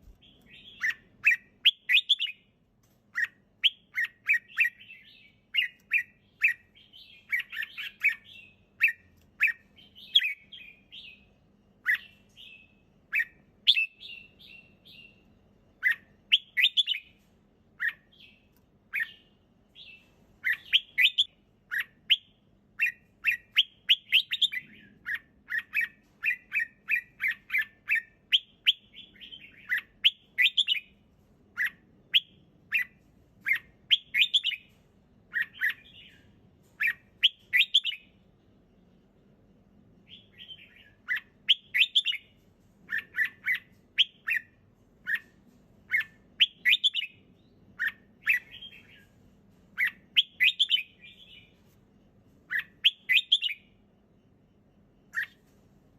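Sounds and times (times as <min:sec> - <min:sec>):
bulbul chirping song: 0:00.0 - 0:02.5, 0:03.1 - 0:17.2, 0:17.8 - 0:38.2, 0:40.0 - 0:49.2, 0:49.8 - 0:51.6, 0:52.5 - 0:53.8, 0:54.9 - 0:55.4.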